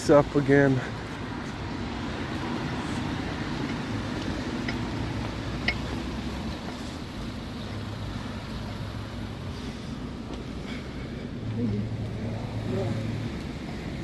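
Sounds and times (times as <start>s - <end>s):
low traffic rumble: 0.0s - 14.0s.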